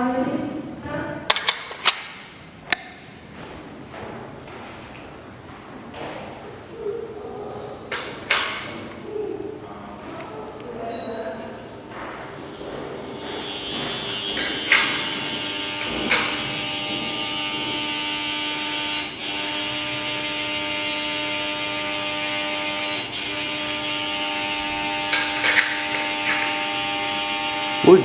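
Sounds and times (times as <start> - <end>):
steady electrical buzz: 7.4 - 28.0.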